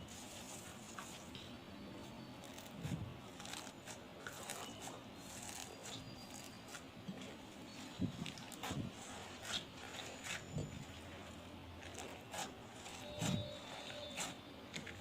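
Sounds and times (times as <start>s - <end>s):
crunchy slime crackling: 2.4s - 6.9s, 11.8s - 15.0s.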